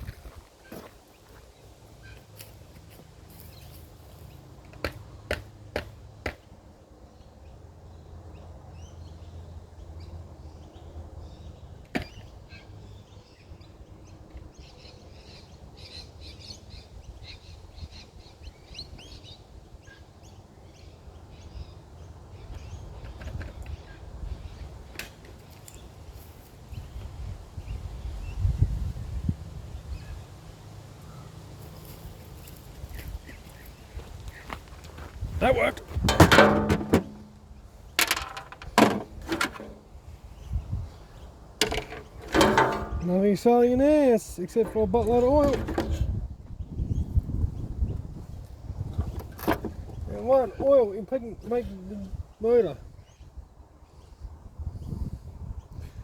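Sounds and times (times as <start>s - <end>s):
plastic and metal parts knocking: 36.1s - 37.4s, 38.0s - 39.8s, 41.6s - 43.1s, 44.6s - 46.1s.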